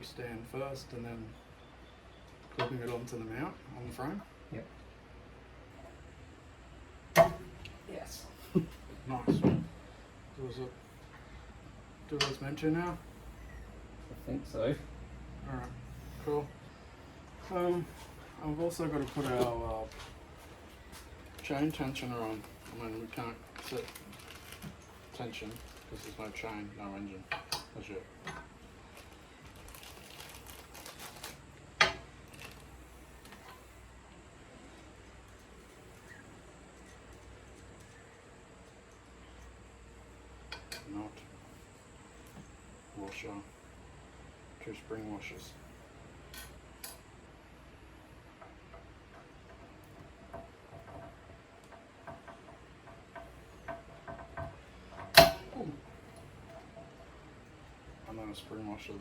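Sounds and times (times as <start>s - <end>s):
small parts rustling by hand: 17.2s - 26.8s, 28.2s - 34.0s.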